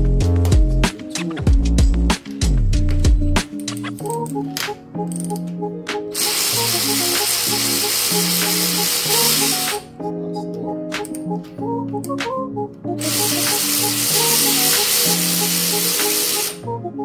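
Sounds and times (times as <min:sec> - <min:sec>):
background music: 0:00.0 - 0:17.0
loud hiss: 0:06.2 - 0:09.8, 0:13.0 - 0:16.6.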